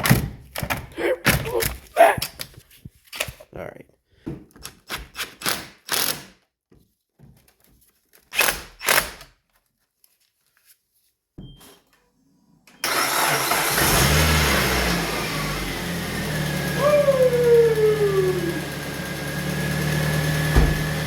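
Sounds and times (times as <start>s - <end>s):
car engine starting and running: 12.7s - 21.0s
knocks and clunks: 19.9s - 21.0s.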